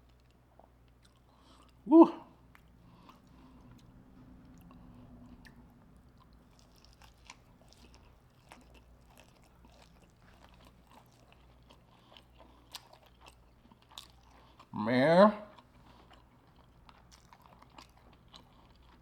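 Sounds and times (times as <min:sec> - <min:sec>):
chewing crunchy food: 0:00.0 - 0:14.8, 0:15.4 - 0:19.0.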